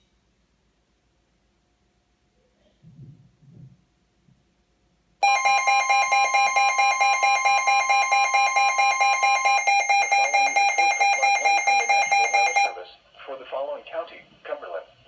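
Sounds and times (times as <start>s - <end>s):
electronic alert beeping: 5.2s - 12.8s.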